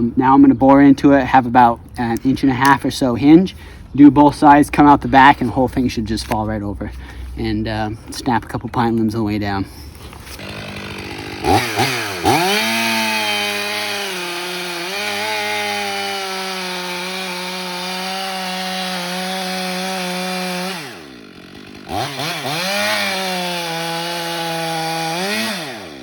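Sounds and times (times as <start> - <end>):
chainsaw cutting into wood: 9.8 - 26.0.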